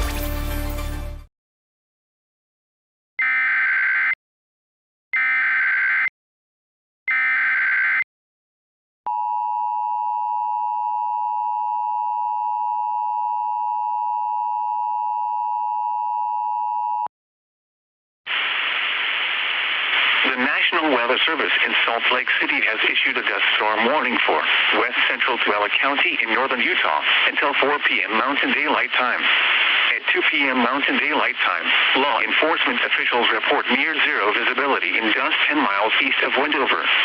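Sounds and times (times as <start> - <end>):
radio static hiss: 18.3 - 37.0.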